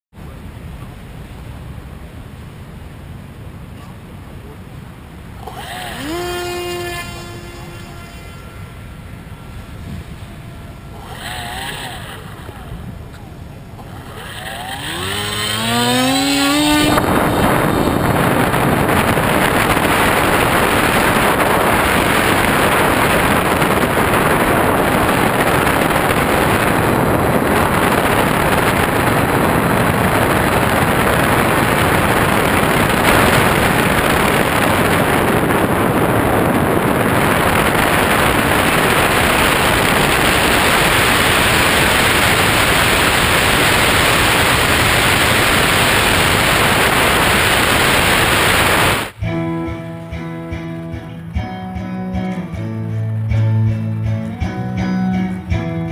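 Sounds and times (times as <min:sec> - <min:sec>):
wind and propeller rush: 0:00.2 - 0:49.2
electric motor whine rising: 0:05.4 - 0:12.9, 0:14.0 - 0:49.2.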